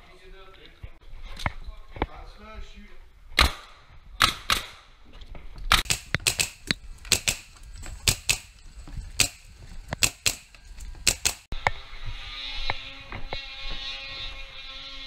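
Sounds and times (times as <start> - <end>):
nail gun firing: 5.7 - 8.5, 9.2 - 9.4, 10.0 - 11.5.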